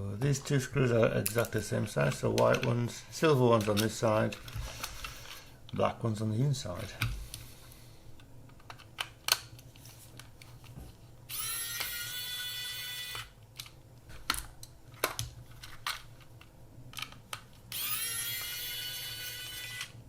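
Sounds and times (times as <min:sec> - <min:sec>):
electric screwdriver whirring: 0:11.3 - 0:13.3, 0:17.7 - 0:20.0.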